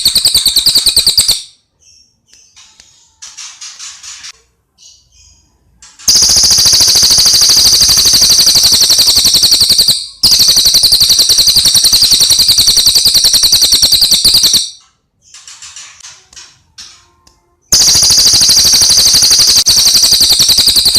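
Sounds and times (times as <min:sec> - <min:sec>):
rapid rattling bird trill: 0:00.0 - 0:01.6, 0:06.0 - 0:16.1, 0:17.7 - 0:20.9
bird chirps: 0:00.0 - 0:02.8.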